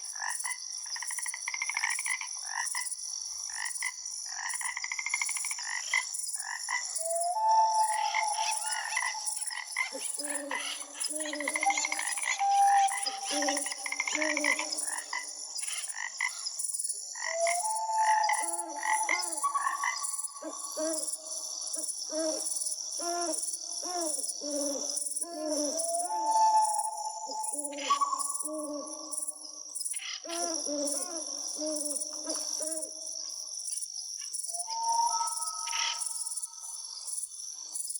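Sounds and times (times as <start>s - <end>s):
birds singing and trilling: 7.0s - 33.5s, 34.3s - 36.6s.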